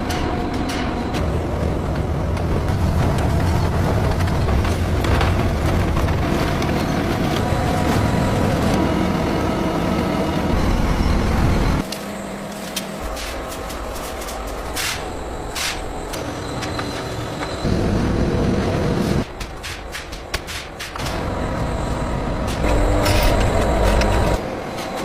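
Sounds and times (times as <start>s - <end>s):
heavy factory machinery rumbling: 0.0s - 25.0s
machine hum: 21.0s - 24.7s.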